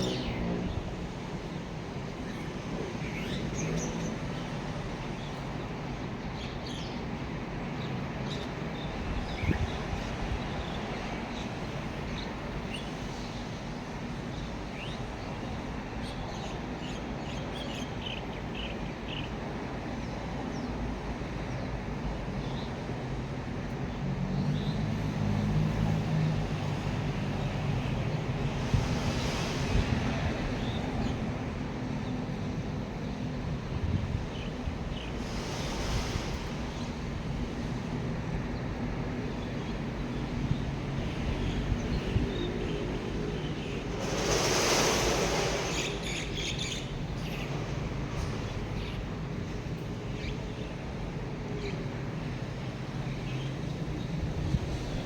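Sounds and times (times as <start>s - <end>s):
steady rushing wind noise: 0.0s - 55.0s
wind whoosh: 26.8s - 31.9s, 33.6s - 38.6s, 40.4s - 49.4s.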